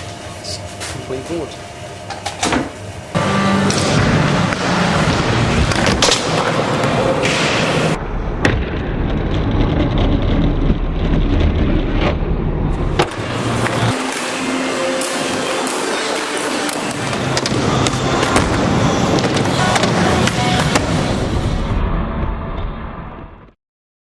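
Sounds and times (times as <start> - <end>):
skateboard wheels rolling: 3.7 - 21.5.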